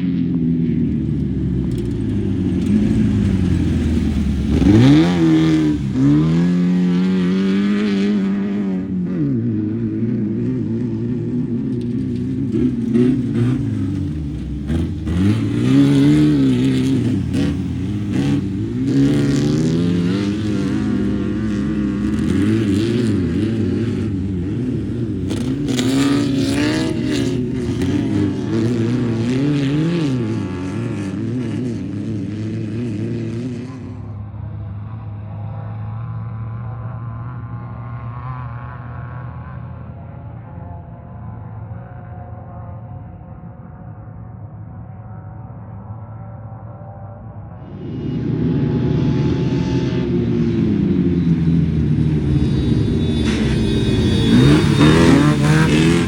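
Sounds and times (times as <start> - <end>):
race vehicle engine revving: 1.5 - 34.1, 47.7 - 56.0
rushing noise: 47.6 - 56.0.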